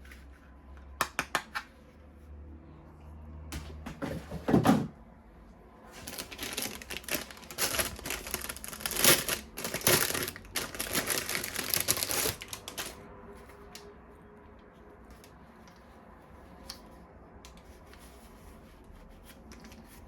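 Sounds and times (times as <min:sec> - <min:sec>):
packaging rustling: 0:05.9 - 0:13.0.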